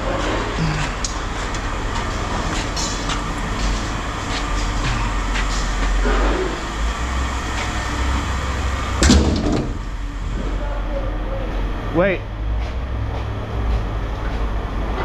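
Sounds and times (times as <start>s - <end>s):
vehicle engine idling: 0.0s - 15.0s
light clanks and knocks: 9.0s - 9.8s.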